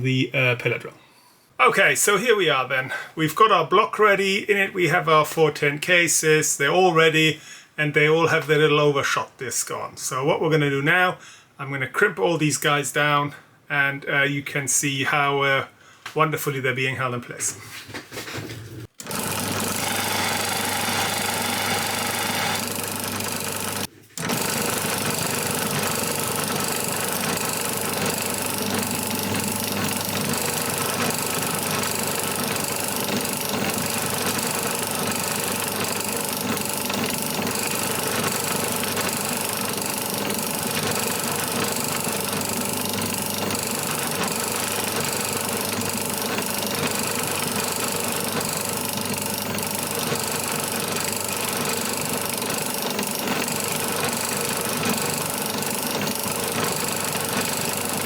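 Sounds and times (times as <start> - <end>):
drill press motor running: 19.0 - 58.0.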